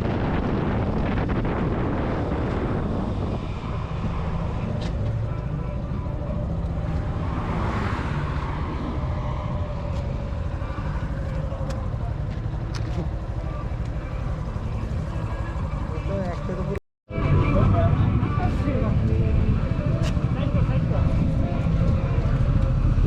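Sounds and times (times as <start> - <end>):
wind noise on microphone: 0.0 - 13.4
motorcycle engine: 0.1 - 23.0.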